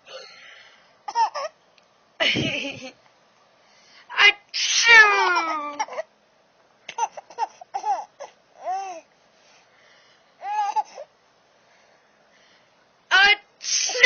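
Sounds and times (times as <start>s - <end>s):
baby laughing: 1.1s - 1.6s, 6.9s - 9.0s.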